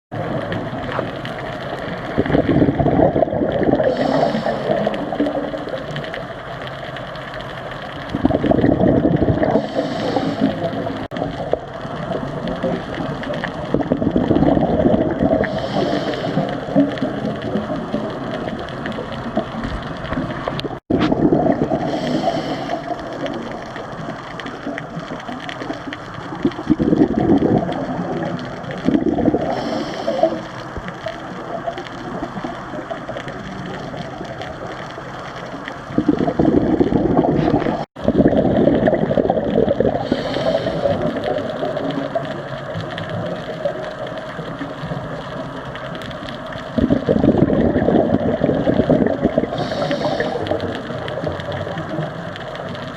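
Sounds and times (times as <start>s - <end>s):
steady underwater noise: 0.1s - 52.9s
diver exhaling bubbles: 0.2s - 6.2s, 8.1s - 30.7s, 35.9s - 43.8s, 46.8s - 51.9s
hiss of inhaled air: 3.8s - 5.0s, 9.6s - 10.8s, 15.4s - 16.7s, 21.8s - 23.0s, 29.5s - 30.6s, 40.0s - 41.1s, 49.5s - 50.6s.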